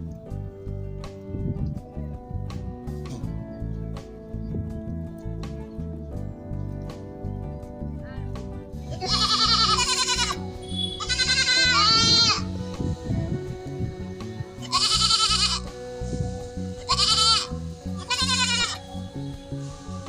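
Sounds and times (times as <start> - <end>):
background music: 0.0 - 20.0
goats bleating: 8.9 - 12.5, 14.6 - 15.7, 16.8 - 18.8.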